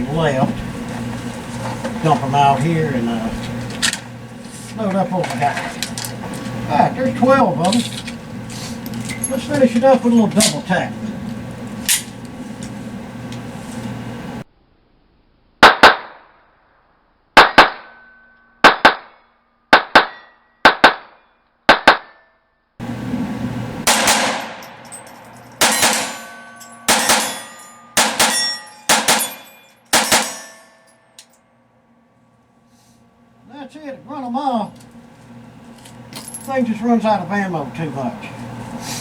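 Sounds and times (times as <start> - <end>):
pistol shots: 15.6 - 16.2, 17.4 - 18.0, 18.6 - 19.1, 19.7 - 22.1, 23.9 - 24.6, 25.6 - 30.5
metallic ring: 17.9 - 18.6, 23.9 - 31.5.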